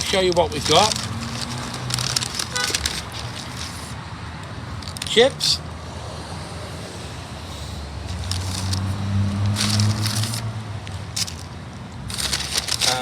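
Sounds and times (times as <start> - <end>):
paper packaging rustling: 0.0 - 4.0, 8.1 - 13.0.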